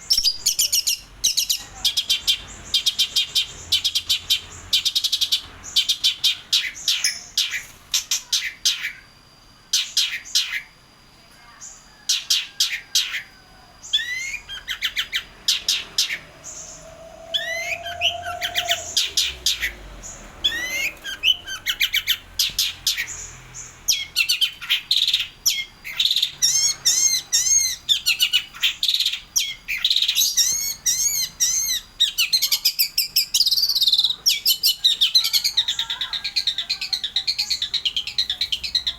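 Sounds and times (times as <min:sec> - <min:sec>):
bird singing chirps and trills: 0:11.6 - 0:38.9.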